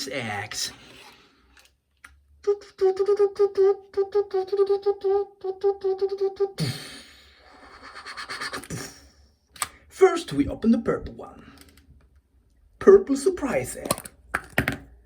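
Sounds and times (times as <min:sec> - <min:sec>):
flute-like music jingle: 0:02.4 - 0:06.6.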